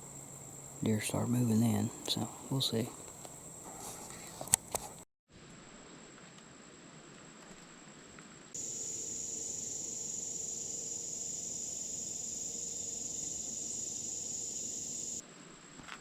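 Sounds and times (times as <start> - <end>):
high-pitched insect chorus: 0.0 - 3.8, 8.6 - 15.2.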